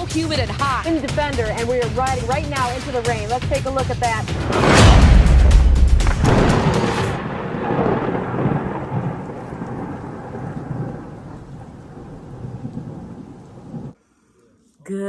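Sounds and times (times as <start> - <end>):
thunder rolling: 4.0 - 14.0
rain: 4.4 - 14.0.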